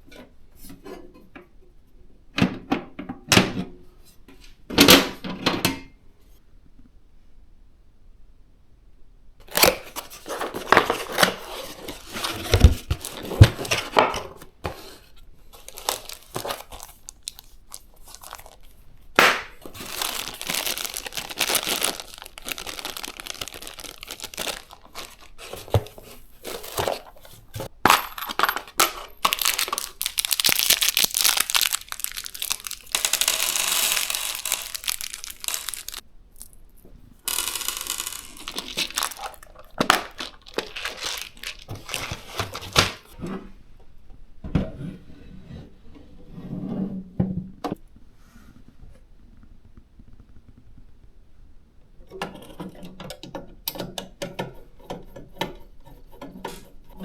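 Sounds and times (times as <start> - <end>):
plastic and paper crinkling: 9.5 - 43.2.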